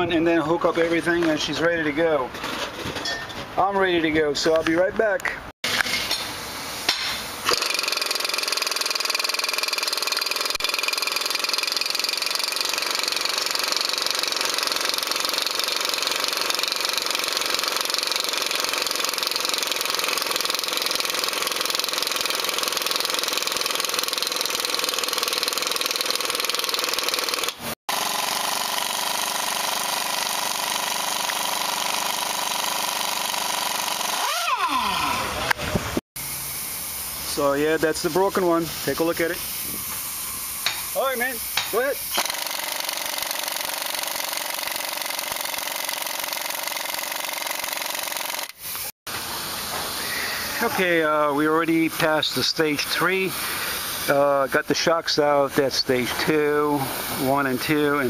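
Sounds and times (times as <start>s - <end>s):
power tool whining: 7.4s - 36.5s, 39.6s - 50.9s.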